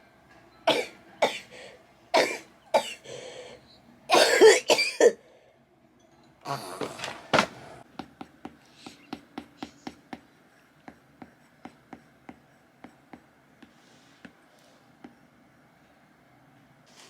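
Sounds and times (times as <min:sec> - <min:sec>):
person coughing: 0:00.7 - 0:01.5, 0:02.2 - 0:03.0, 0:04.1 - 0:05.2.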